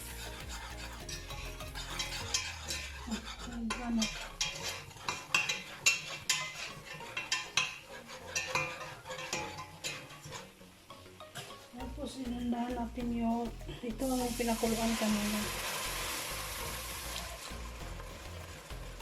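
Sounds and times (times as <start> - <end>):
utensil scraping a pot: 0.0 - 10.6.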